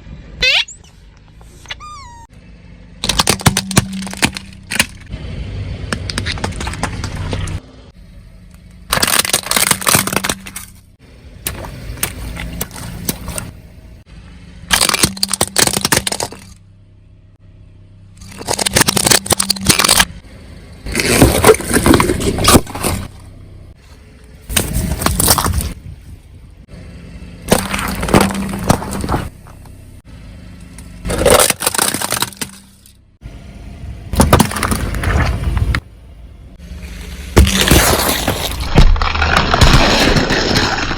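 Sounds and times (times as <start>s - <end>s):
low steady hum: 0.0s - 40.9s
things crunching under a car: 3.0s - 5.1s, 5.8s - 7.6s, 8.6s - 14.0s, 14.7s - 16.6s, 18.2s - 20.2s, 20.8s - 26.0s, 27.4s - 30.0s, 30.6s - 33.0s, 34.1s - 35.9s, 36.6s - 40.9s.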